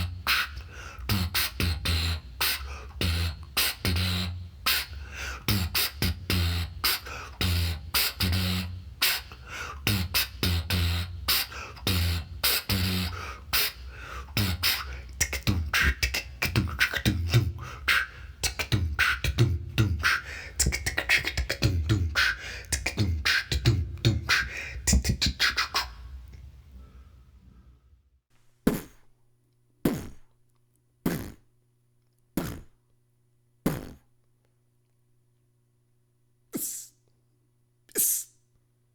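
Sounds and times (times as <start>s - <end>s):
person beatboxing: 0.0s - 26.4s, 28.7s - 29.0s, 29.9s - 30.3s, 31.1s - 31.4s, 32.4s - 32.8s, 33.7s - 34.1s, 36.6s - 37.0s, 37.9s - 38.4s
faint low hum: 0.0s - 28.6s.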